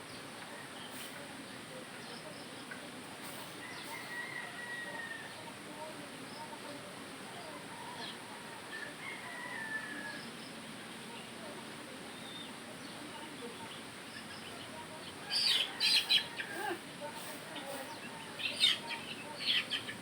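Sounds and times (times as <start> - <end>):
outdoor background: 0.0 - 20.0
distant rooster crowing: 3.6 - 5.4, 7.7 - 10.3
small bird chirping: 12.1 - 16.6, 17.6 - 20.0.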